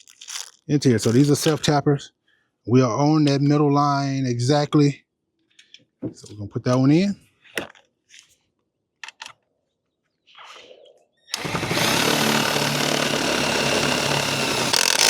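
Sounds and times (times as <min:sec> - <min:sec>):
impact driver driving screw: 0:11.4 - 0:15.0.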